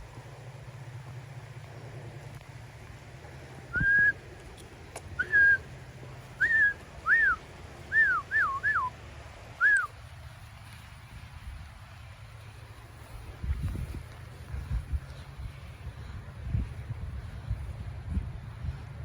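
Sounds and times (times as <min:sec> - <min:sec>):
person whistling sliding notes: 0:03.8 - 0:04.2, 0:05.2 - 0:05.6, 0:06.4 - 0:08.9, 0:09.6 - 0:09.9.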